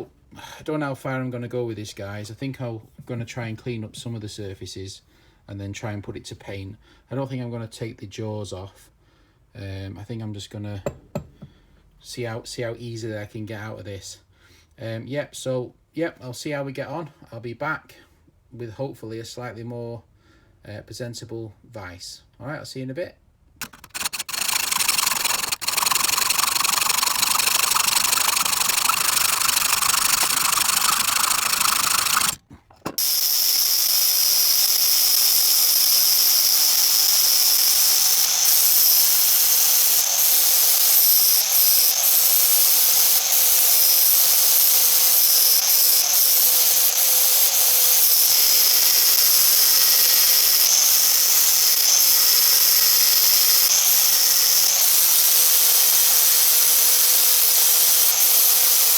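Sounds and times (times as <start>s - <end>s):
power tool running: 23.6s - 58.9s.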